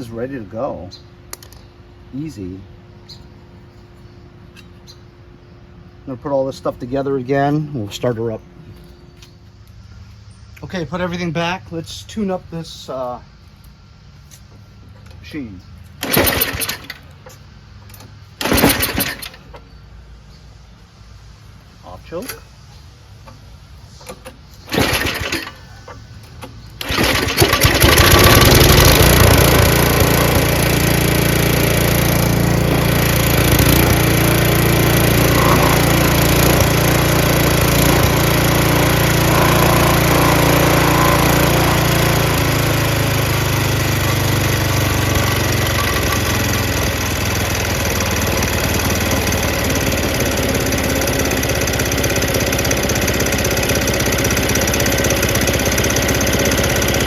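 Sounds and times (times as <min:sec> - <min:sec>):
snowblower engine starting and running: 0:15.0 - 0:19.7, 0:23.3 - 0:57.0.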